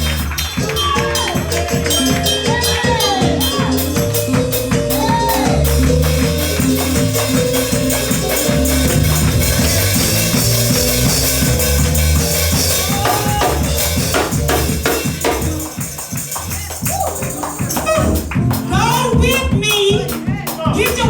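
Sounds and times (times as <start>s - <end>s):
upbeat gospel band music: 0.0s - 21.0s.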